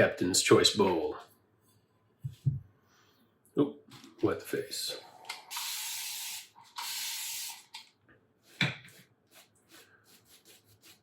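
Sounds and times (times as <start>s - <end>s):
knock: 2.2s - 2.6s.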